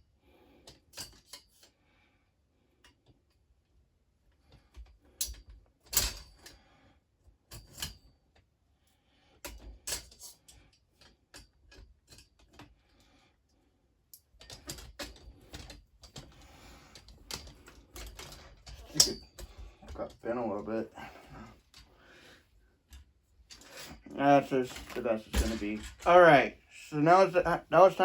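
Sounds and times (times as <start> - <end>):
clatter and rustling: 14.3 - 20.3, 22.9 - 26.1
frame parts knocking: 24.7 - 26.2.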